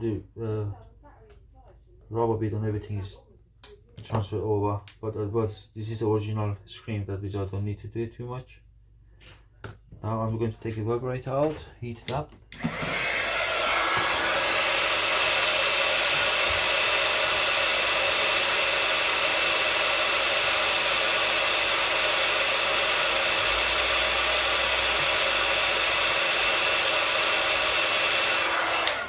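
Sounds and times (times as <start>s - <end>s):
heat gun blowing hot air: 12.6s - 29.0s.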